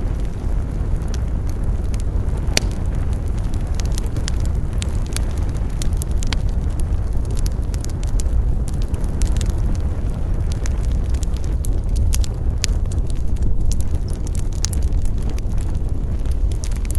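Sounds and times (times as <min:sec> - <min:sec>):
campfire crackling: 0:00.0 - 0:16.9
low rumble: 0:00.0 - 0:16.9.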